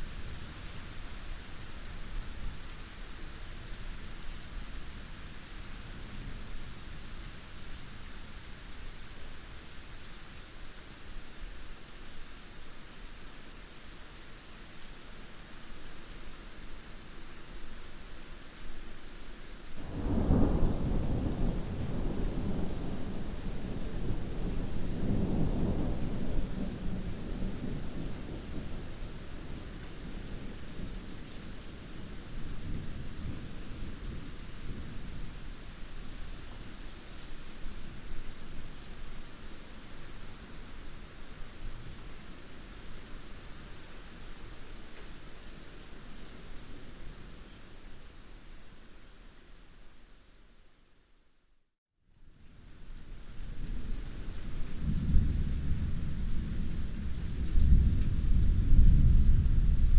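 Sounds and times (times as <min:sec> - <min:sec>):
heavy rain falling: 0:00.0 - 0:50.0, 0:52.6 - 0:59.9
low thunder rumble: 0:19.8 - 0:36.4, 0:53.5 - 0:59.9.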